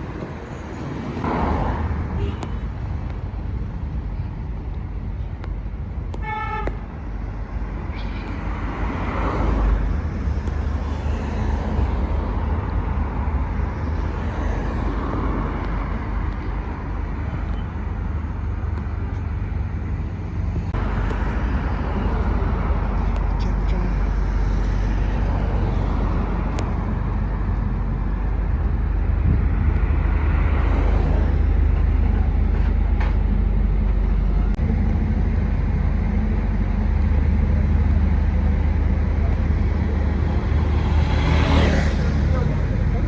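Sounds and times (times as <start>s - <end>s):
road traffic: 0.0s - 43.0s
car horn toot: 2.2s - 2.7s, 6.2s - 6.8s.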